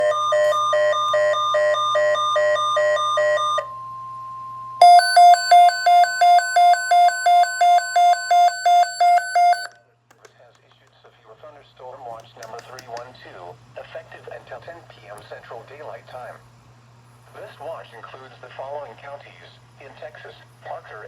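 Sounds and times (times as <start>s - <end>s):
rapid electronic beeping: 4.8s - 9.7s.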